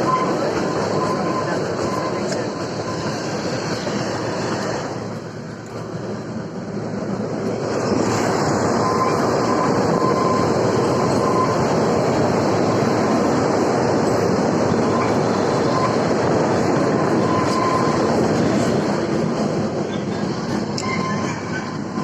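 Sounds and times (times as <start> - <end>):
faint wheel squeal: 0.0 - 3.3, 8.8 - 11.6, 17.2 - 18.2, 20.8 - 22.0
train wheels rumbling on track: 0.0 - 22.0.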